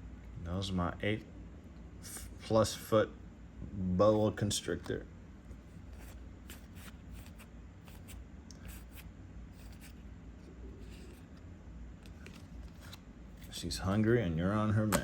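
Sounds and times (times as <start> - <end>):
low steady hum: 0.0 - 15.0
trading cards clicking and rustling: 5.9 - 9.0, 12.0 - 13.6.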